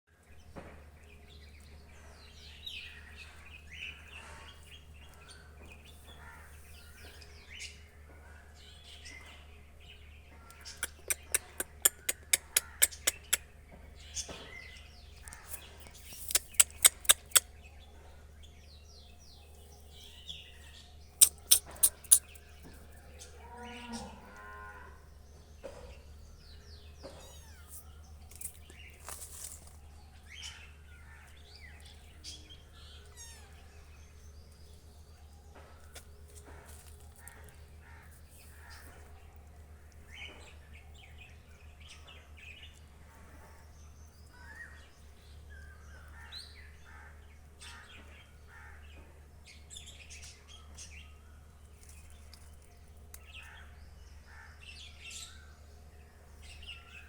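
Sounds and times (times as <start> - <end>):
birds chirping: 10.5 - 17.8, 19.0 - 22.8.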